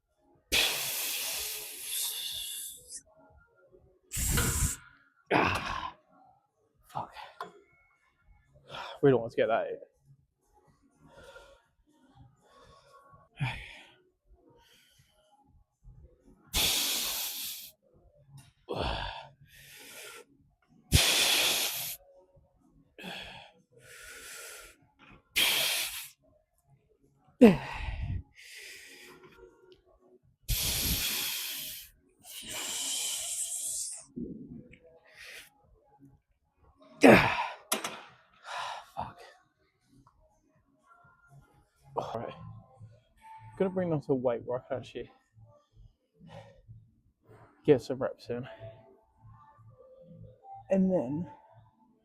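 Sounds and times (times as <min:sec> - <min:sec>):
man grunting: 0:05.3 - 0:05.9, 0:37.0 - 0:37.6
man exhaling forcefully: 0:30.5 - 0:31.8.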